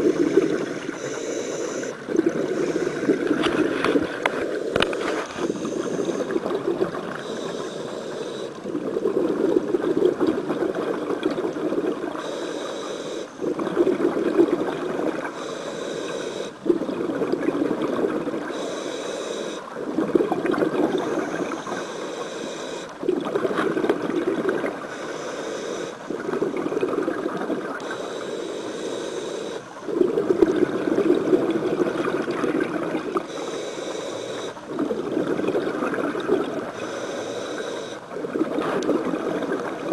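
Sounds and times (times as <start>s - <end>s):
regulator hissing inhale: 0.0s - 3.2s, 4.4s - 6.5s, 7.1s - 8.7s, 12.2s - 13.5s, 15.3s - 16.6s, 18.5s - 19.8s, 20.9s - 23.0s, 24.8s - 26.2s, 27.8s - 30.0s, 33.2s - 34.7s, 36.6s - 38.1s
bubbling exhaust underwater: 0.0s - 39.9s.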